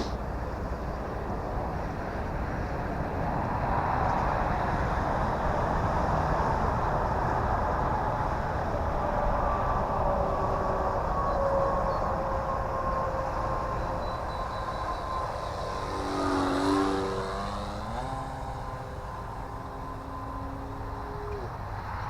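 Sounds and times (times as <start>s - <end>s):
wind rumble on microphone: 0.0s - 22.0s
rc plane motor whining: 9.2s - 21.5s.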